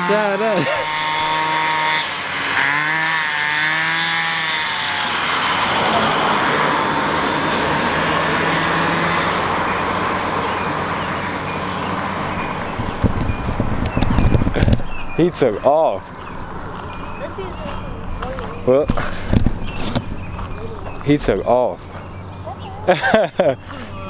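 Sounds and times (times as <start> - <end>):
go-kart engine revving: 0.0 - 24.0.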